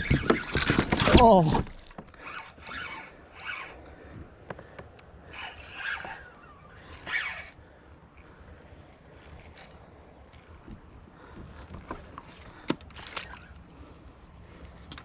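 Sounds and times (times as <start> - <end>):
mechanical ratcheting rasps: 2.1 - 3.8, 6.9 - 7.6.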